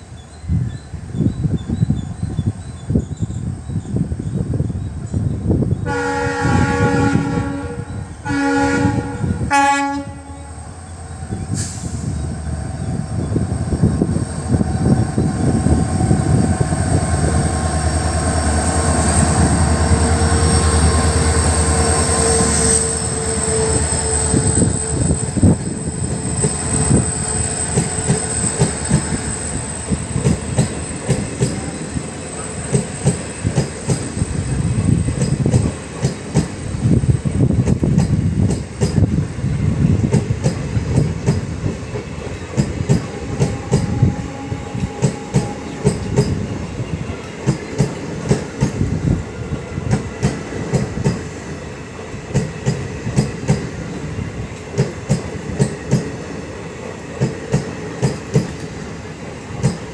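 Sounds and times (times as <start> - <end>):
locomotive horn blasts: 5.8 - 10.7, 43.1 - 45.9
train wheels clacking over rail joints: 27.6 - 29.2, 29.9 - 31.9, 32.6 - 34.2, 35.0 - 36.6, 37.6 - 39.2, 40.0 - 44.2, 44.8 - 46.5, 47.2 - 48.9, 49.8 - 51.4, 52.3 - 53.7, 54.5 - 58.8, 59.5 - 59.9.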